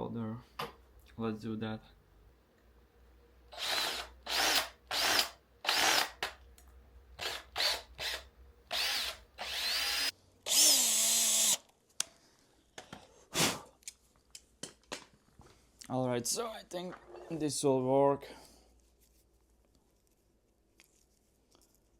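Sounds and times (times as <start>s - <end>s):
power drill bursts: 3.6s - 6.2s, 7.2s - 11.6s.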